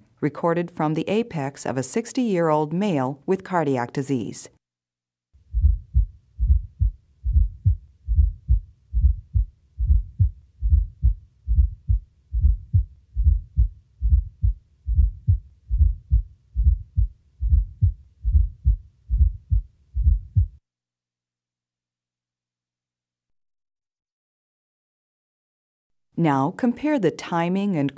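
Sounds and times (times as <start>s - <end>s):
heartbeat thuds: 5.5s - 20.6s.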